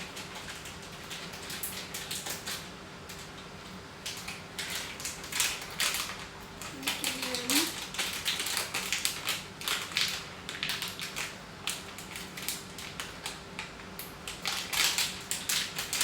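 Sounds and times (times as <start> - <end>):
cat crunching dry treats: 4.1 - 16.0.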